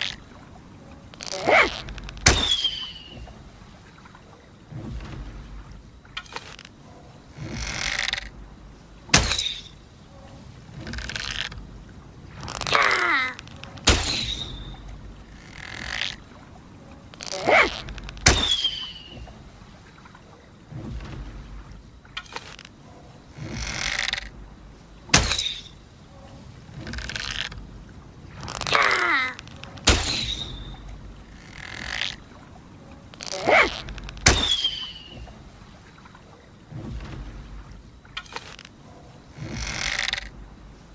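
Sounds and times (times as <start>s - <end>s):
bow creaking squeak: 1.1s - 3.3s, 7.4s - 8.3s, 12.4s - 16.3s, 17.1s - 19.3s, 23.4s - 24.3s, 28.4s - 32.3s, 33.1s - 35.4s, 39.4s - 40.4s
bow creaking as drawn: 7.4s - 8.3s, 15.4s - 16.2s, 23.4s - 24.3s, 31.4s - 32.2s, 39.4s - 40.3s
arrow shots with ringing: 13.8s - 14.6s, 18.2s - 18.9s, 29.8s - 30.6s, 34.2s - 34.9s.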